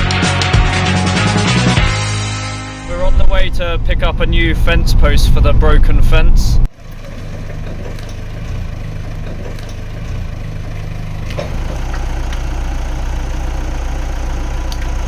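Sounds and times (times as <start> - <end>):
engine running at low revs: 3.0 - 15.0.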